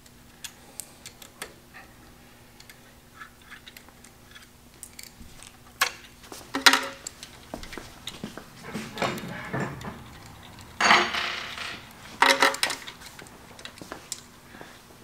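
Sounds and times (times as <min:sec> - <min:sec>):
metal parts and tools clanking: 0:05.8 - 0:14.3.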